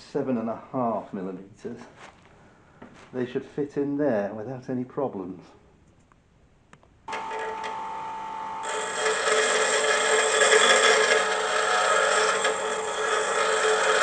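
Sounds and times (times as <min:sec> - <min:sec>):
electric grinder whining: 0:07.1 - 0:14.0
grinder grinding metal bolt: 0:08.6 - 0:14.0.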